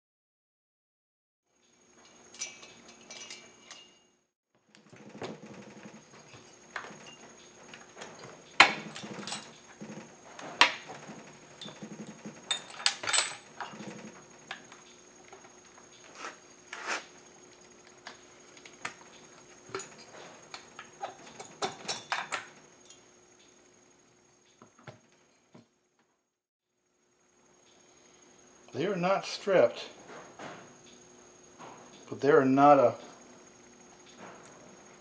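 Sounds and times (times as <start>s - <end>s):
hand tools clinking on metal: 2.0s - 4.1s, 4.8s - 14.8s, 17.6s - 23.0s
faint steady hum: 4.8s - 25.6s.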